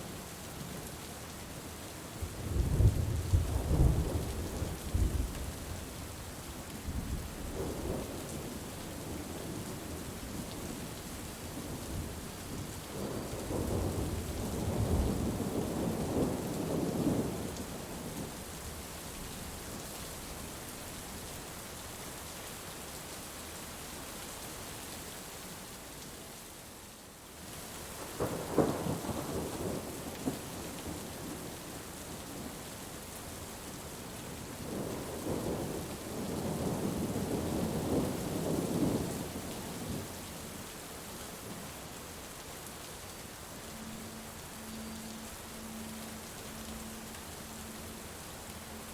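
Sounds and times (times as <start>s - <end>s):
steady rain: 0.0s - 48.9s
thunder rumbling: 2.2s - 5.4s, 11.6s - 17.4s.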